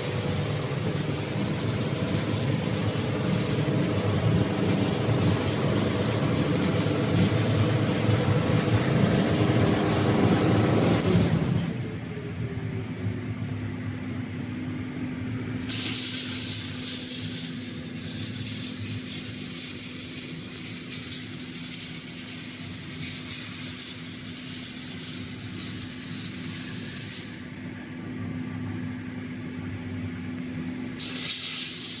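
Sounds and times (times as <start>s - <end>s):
abrasive hissing on metal: 0.0s - 4.1s, 15.6s - 27.6s, 31.0s - 32.0s
sanding machine motor hum: 0.0s - 11.6s.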